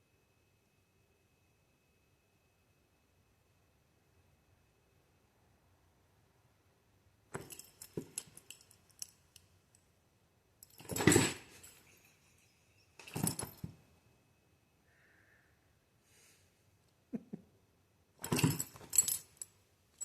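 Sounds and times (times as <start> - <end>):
cat toy rattling: 10.6 - 12.2, 12.9 - 13.7, 18.2 - 19.5.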